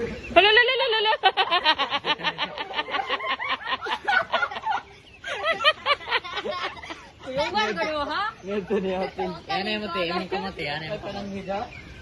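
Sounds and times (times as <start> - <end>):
high-pitched giggling laughter: 0.5 - 7.9.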